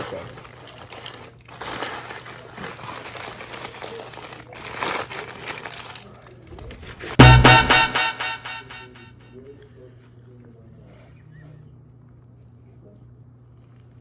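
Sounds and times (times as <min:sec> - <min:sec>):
paper wrapping crinkling: 0:00.0 - 0:06.3
loud music with pulsing beat: 0:07.2 - 0:08.9.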